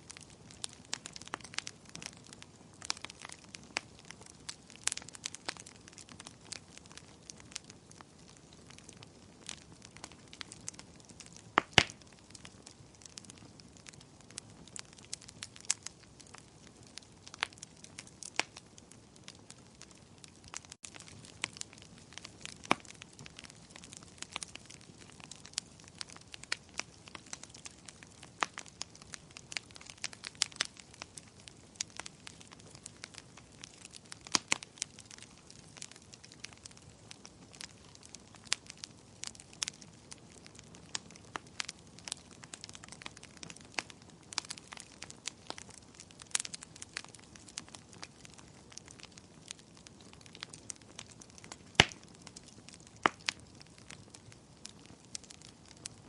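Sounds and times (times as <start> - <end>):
faint steady hiss: 0.0 - 19.8
wood fire crackling and popping: 0.0 - 56.0.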